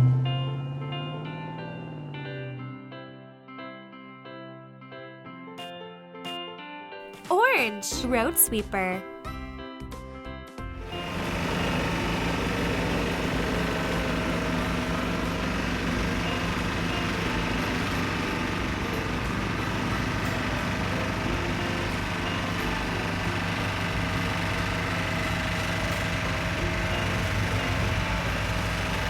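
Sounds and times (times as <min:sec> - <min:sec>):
road sweeper engine drone: 0:10.9 - 0:29.0.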